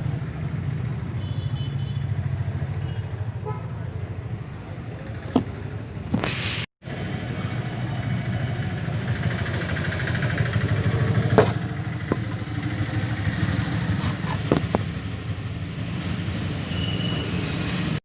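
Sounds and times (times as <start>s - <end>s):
vehicle engine running: 6.8s - 16.5s
sharp clicks and knocks: 13.4s - 15.0s.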